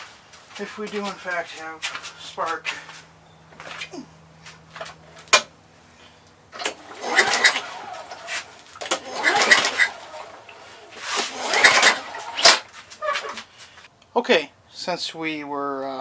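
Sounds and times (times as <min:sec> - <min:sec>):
engine turning over: 0:06.4 - 0:13.4
recoil starter pulled: 0:06.5 - 0:13.5.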